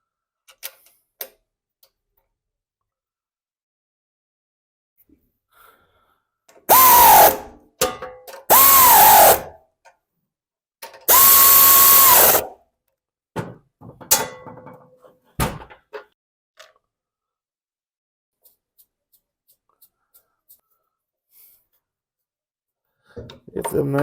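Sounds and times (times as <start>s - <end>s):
power driver running in bolts: 6.7s - 7.4s, 8.5s - 9.5s, 11.1s - 12.5s.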